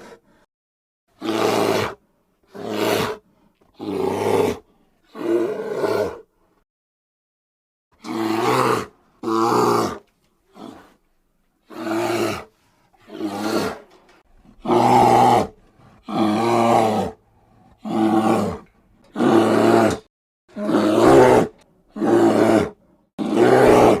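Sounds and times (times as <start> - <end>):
bear growling roars: 1.2 - 3.2, 3.8 - 6.3, 8.0 - 11.0, 11.7 - 24.0.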